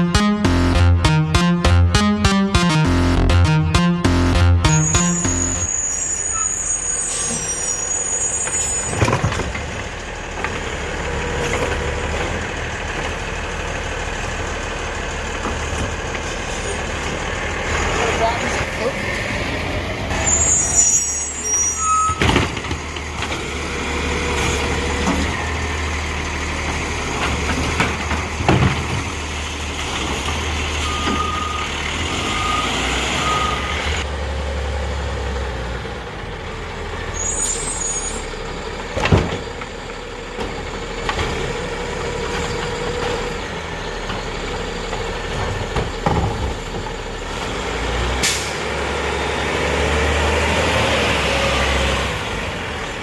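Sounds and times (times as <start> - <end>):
diesel engine running: 0.0 - 20.6, 22.4 - 53.0
short beeps: 0.4 - 6.5
air brakes squealing and hissing: 4.7 - 9.3, 20.1 - 22.4, 30.8 - 34.0, 37.1 - 38.4, 48.2 - 48.7
loud clunks from truck: 27.2 - 29.2, 38.9 - 39.7.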